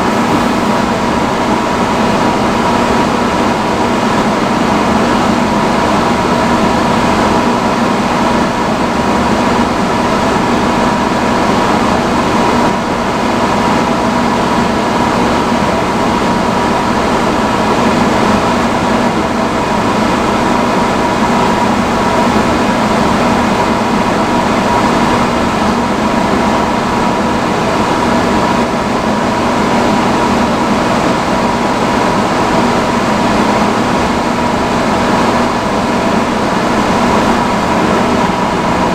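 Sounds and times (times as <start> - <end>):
hair dryer blowing air: 0.0 - 1.6
steady hum: 0.0 - 1.9.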